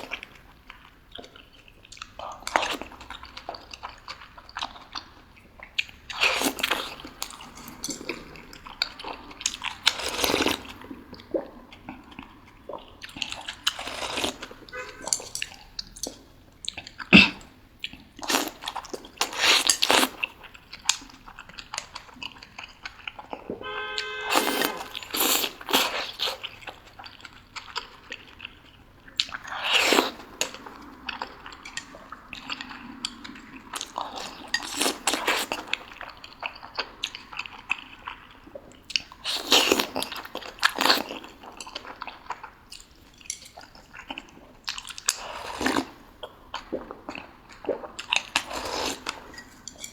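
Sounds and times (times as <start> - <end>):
chewing and biting food: 0.0 - 49.9.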